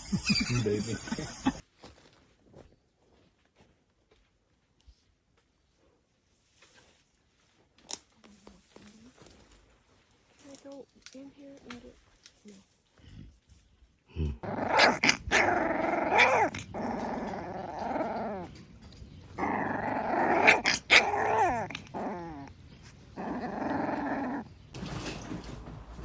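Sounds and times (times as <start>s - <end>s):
animal growling: 14.1s - 18.6s, 19.4s - 24.5s.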